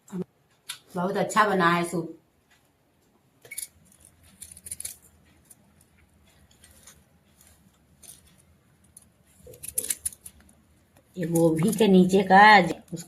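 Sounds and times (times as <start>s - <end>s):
utensils clicking and scraping: 3.4s - 13.0s.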